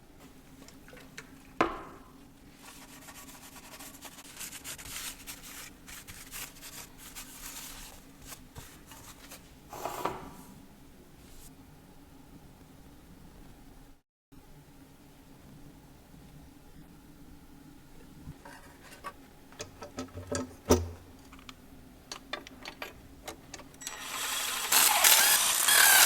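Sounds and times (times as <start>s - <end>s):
tool scraping metal engine part: 18.4s - 19.2s.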